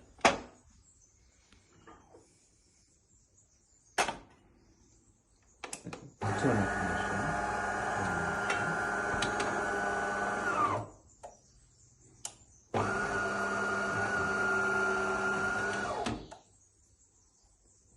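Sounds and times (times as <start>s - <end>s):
coffee machine motor whirring: 6.2s - 10.9s, 12.8s - 16.3s.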